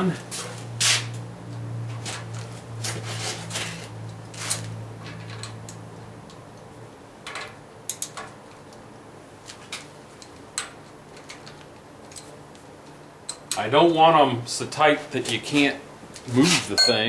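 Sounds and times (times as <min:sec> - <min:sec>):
steady low hum: 0:15.8 - 0:17.0.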